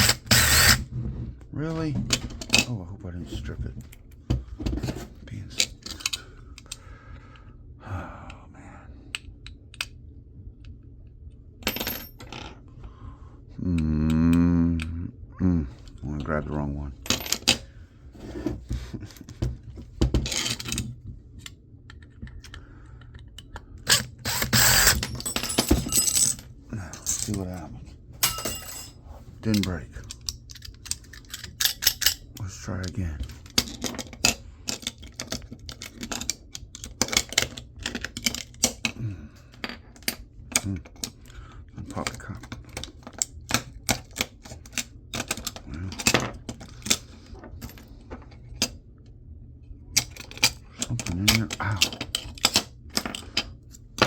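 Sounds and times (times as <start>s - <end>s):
steady low hum: 0.0s - 54.0s
metal part clinking on surface: 28.2s - 29.0s.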